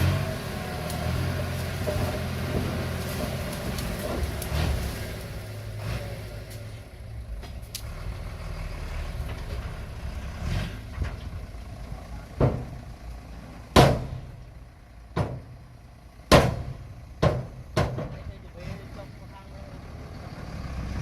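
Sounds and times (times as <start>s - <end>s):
bulldozer diesel engine: 0.0s - 21.0s
sharp knocks: 12.4s - 12.8s, 13.8s - 14.2s, 15.2s - 15.5s, 16.3s - 18.2s.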